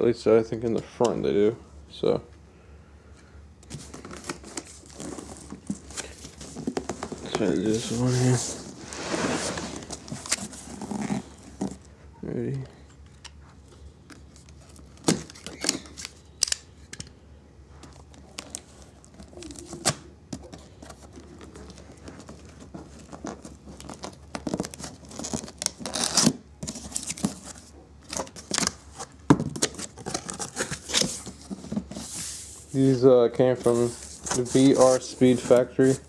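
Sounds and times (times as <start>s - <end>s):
cardboard scraping and rustling: 3.7s - 11.9s, 18.3s - 36.0s
packing tape cut and torn: 23.0s - 31.3s.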